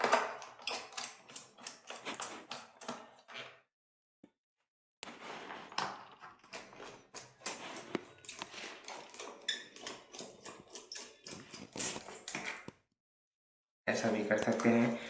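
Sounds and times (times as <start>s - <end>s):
screwdriver clicks and scrapes: 0.0s - 3.4s, 5.0s - 12.7s.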